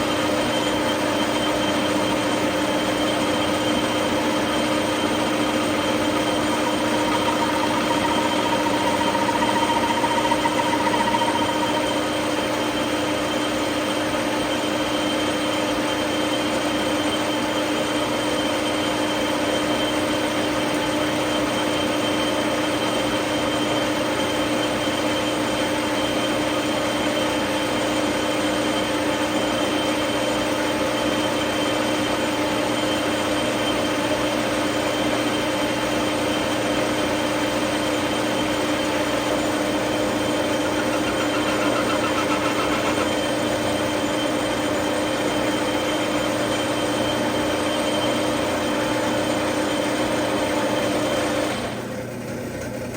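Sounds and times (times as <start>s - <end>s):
metal lathe humming: 0.2s - 16.9s, 35.8s - 51.8s
high whine: 4.1s - 13.6s, 38.4s - 44.8s.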